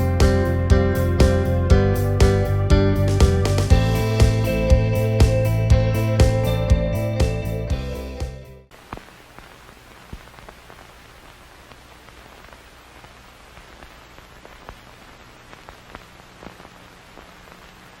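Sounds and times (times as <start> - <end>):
sharp clicks and crackles: 8.8 - 17.9.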